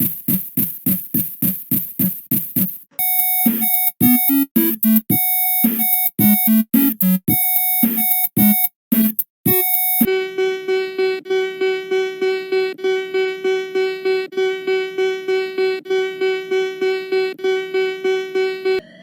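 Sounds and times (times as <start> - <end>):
short beeps: 3.0 - 10.1
pulsing buzzy alarm tone: 3.0 - 10.9.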